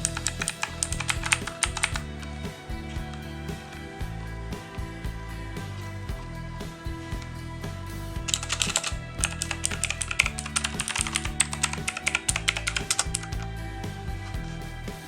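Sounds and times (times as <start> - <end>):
background music: 0.0 - 15.0.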